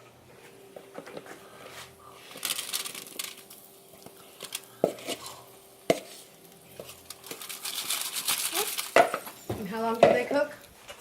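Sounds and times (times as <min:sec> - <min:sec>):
scraping food from a bowl: 0:04.8 - 0:08.9
utensil knocking on dish: 0:09.0 - 0:10.3.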